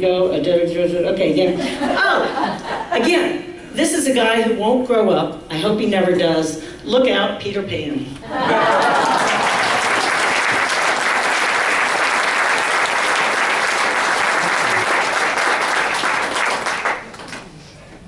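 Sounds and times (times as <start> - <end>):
audience applauding: 8.5 - 17.5.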